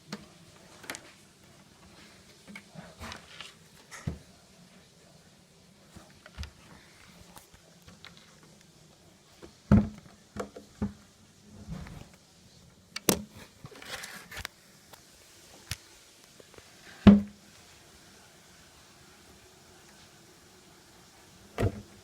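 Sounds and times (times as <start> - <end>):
knocks and thumps: 9.7 - 11.0, 17.1 - 17.4.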